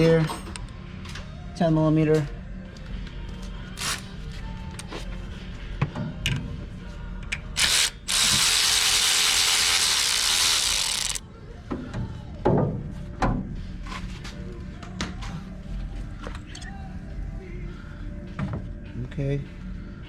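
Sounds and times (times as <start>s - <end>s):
ratchet clicks and knocks: 7.6s - 11.2s.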